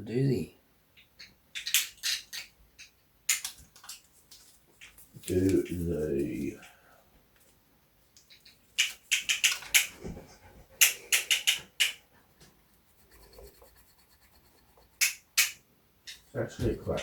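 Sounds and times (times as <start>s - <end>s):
sharp snapping clicks: 1.6s - 4.0s, 8.2s - 10.0s, 10.8s - 12.0s, 15.0s - 16.2s.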